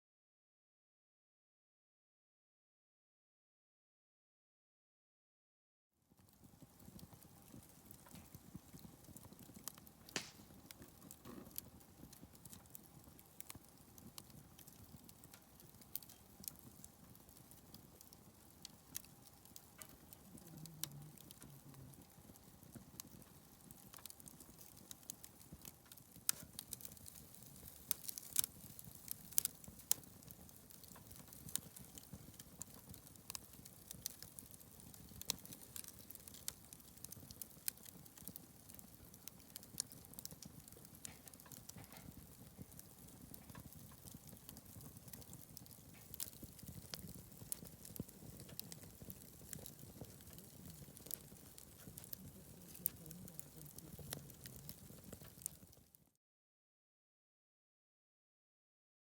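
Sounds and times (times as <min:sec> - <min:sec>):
campfire crackling and popping: 0:06.2 - 0:56.0.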